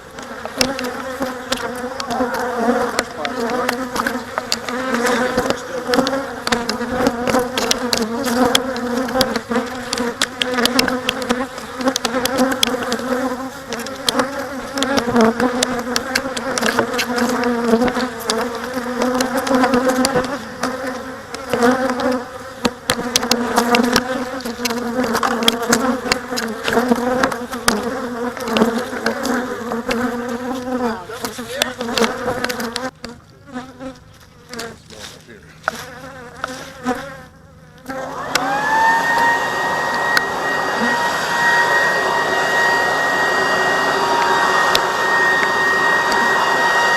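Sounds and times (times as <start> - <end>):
sharp clicks and knocks: 0.0 - 30.1, 31.2 - 33.2
bees buzzing: 0.0 - 46.9.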